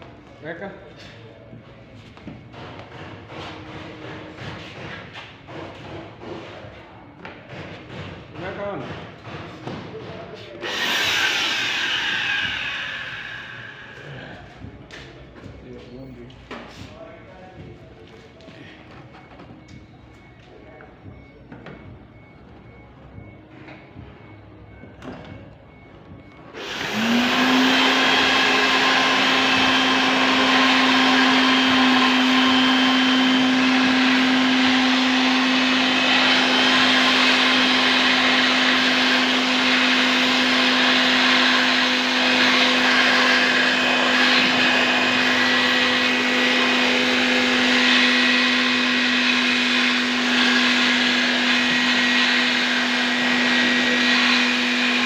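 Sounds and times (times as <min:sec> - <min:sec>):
electric motor humming: 0:10.6 - 0:14.0, 0:26.6 - 0:55.0.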